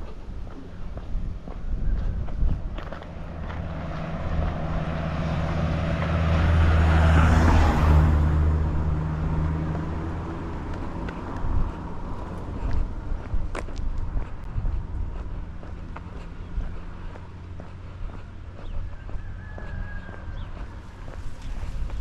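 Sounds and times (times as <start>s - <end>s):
car driving past: 2.9s - 13.1s.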